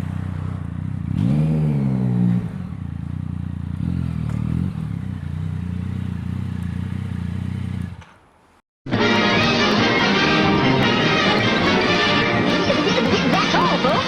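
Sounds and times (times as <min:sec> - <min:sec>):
motorcycle engine idling: 0:00.0 - 0:01.4, 0:02.2 - 0:08.2
music: 0:08.9 - 0:14.0.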